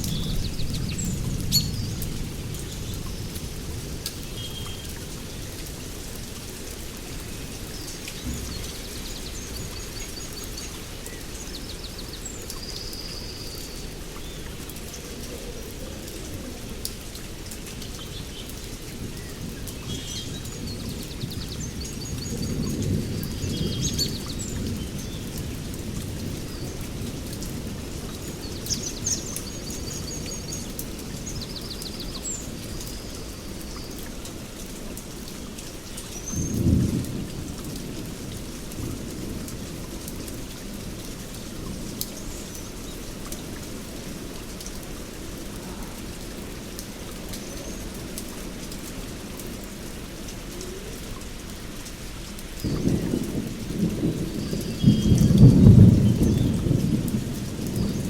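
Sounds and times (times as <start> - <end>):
heavy rain: 0.0 - 58.0
low rolls of thunder: 8.2 - 10.8, 36.4 - 42.0, 52.6 - 58.0.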